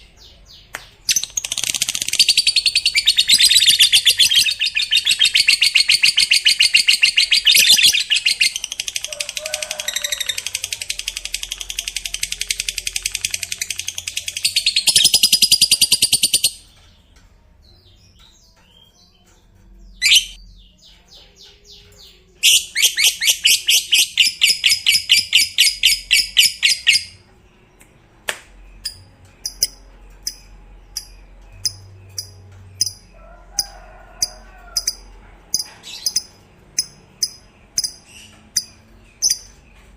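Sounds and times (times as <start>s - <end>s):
lovebird chatter: 1.1s - 16.6s, 28.7s - 39.6s.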